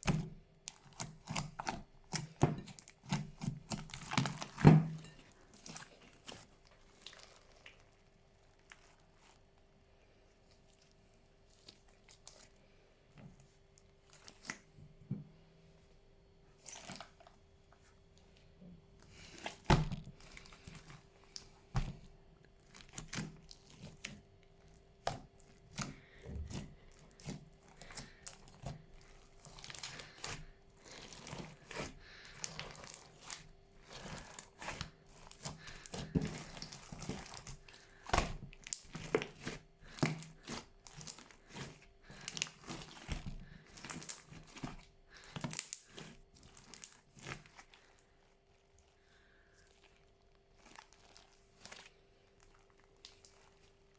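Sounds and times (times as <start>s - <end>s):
slime crackling and popping: 22.6s - 48.0s.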